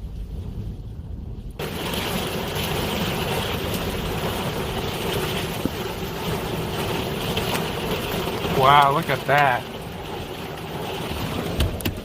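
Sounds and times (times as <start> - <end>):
wind rushing against a car: 0.0 - 12.0.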